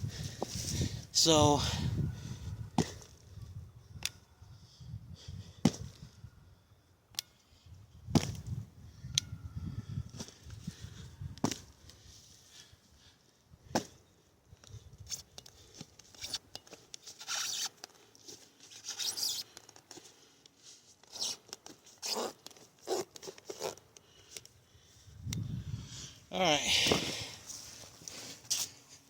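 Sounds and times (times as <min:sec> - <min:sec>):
knife scraping through material: 0:17.1 - 0:17.8, 0:18.6 - 0:19.5, 0:21.0 - 0:23.8.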